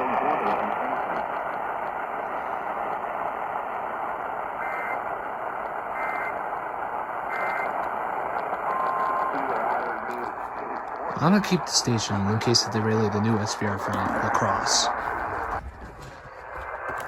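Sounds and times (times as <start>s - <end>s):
radio receiver hiss: 0.0s - 17.0s
two-tone data signal bursts: 5.9s - 6.4s, 7.3s - 7.8s, 8.6s - 9.9s.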